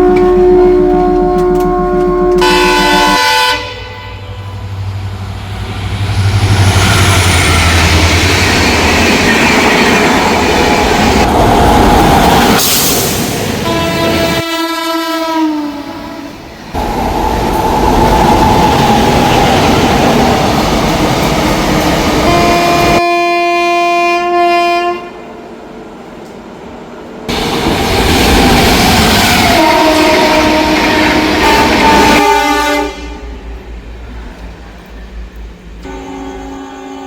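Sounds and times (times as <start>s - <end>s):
locomotive horn blasts: 0.0s - 4.8s, 13.6s - 16.3s, 22.2s - 25.2s, 29.5s - 33.3s, 35.8s - 37.0s
train wheels rumbling on track: 0.0s - 23.0s, 25.2s - 36.8s.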